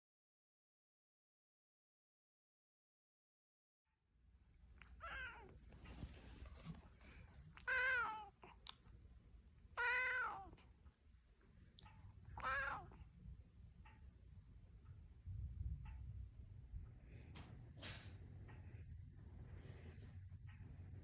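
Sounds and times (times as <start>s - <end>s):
low background hum: 4.1s - 21.0s
cat meowing: 4.8s - 5.6s, 7.6s - 8.7s, 9.8s - 10.7s, 12.4s - 13.0s.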